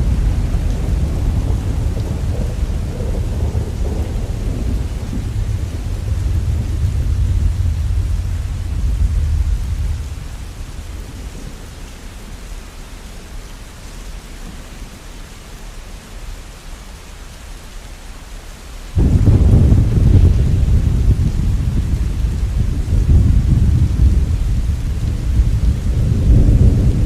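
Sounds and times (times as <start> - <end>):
thunder rumbling: 0.0 - 12.7, 19.0 - 27.0
steady rain hiss: 0.0 - 27.0.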